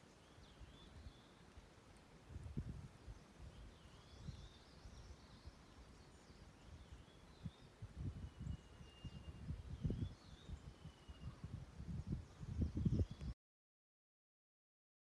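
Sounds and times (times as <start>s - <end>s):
faint birdsong: 0.0s - 13.4s
wind rumble on microphone: 2.2s - 13.4s.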